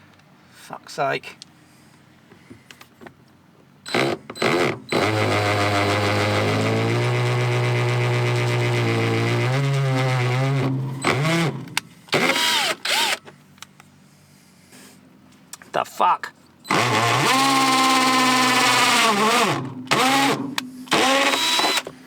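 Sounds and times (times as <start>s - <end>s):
power drill whining: 3.9s - 13.3s, 16.7s - 22.0s.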